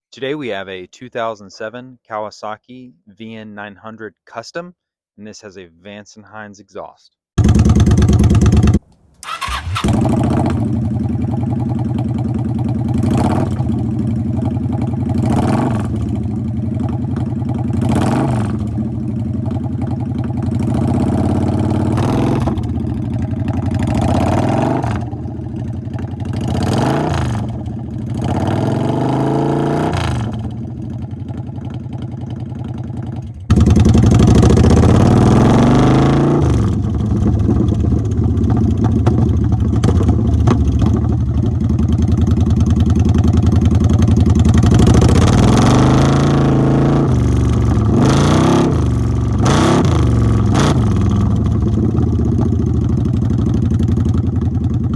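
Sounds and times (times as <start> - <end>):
motorcycle engine idling: 7.4 - 24.2, 25.0 - 26.6, 27.4 - 28.2, 30.3 - 35.1, 36.8 - 45.5, 47.1 - 48.0, 48.9 - 54.9
motorcycle throttle blips: 7.4 - 32.2, 33.2 - 35.7, 36.4 - 54.8.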